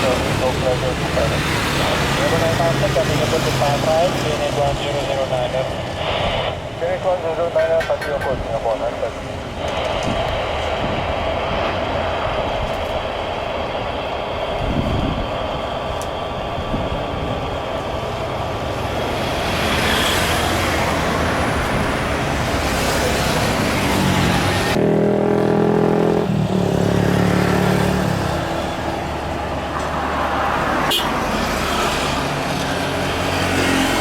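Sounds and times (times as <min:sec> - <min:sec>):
jet airliner roar: 0:00.0 - 0:34.0
wind on microphone: 0:09.4 - 0:19.7, 0:20.4 - 0:24.8.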